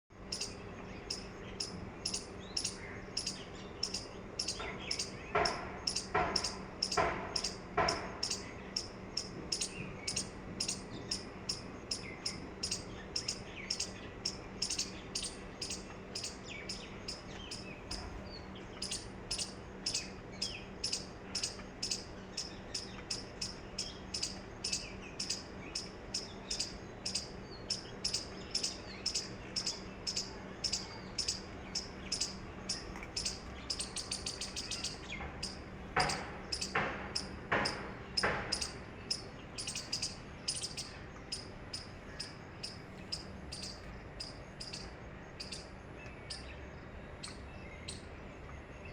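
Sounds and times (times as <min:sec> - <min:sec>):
faint steady hum: 0:00.1 - 0:48.9
bird chirping: 0:00.2 - 0:48.9
lower bird calls: 0:00.2 - 0:48.9.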